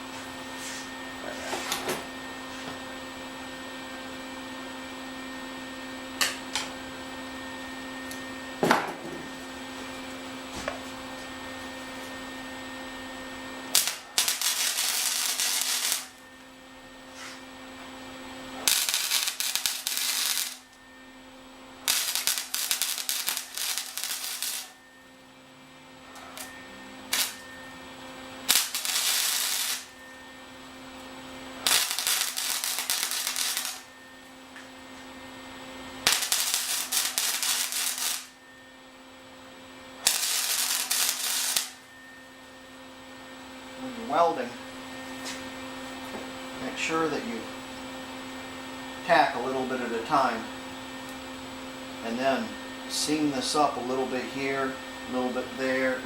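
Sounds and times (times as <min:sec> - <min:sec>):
welder electrical hum: 0:00.0 - 0:56.0
welding arc crackling: 0:13.6 - 0:16.2, 0:18.6 - 0:20.8, 0:21.8 - 0:24.8, 0:26.4 - 0:27.5, 0:28.4 - 0:30.0, 0:31.6 - 0:33.9, 0:35.9 - 0:38.4, 0:40.0 - 0:41.9.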